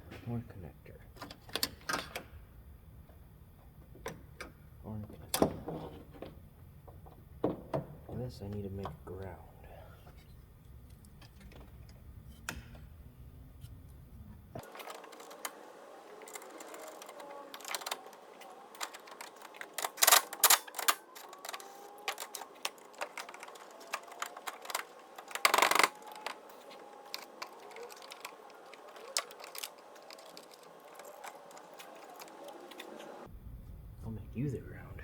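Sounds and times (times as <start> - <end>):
hand tools clicking and rattling: 16.2 - 33.2.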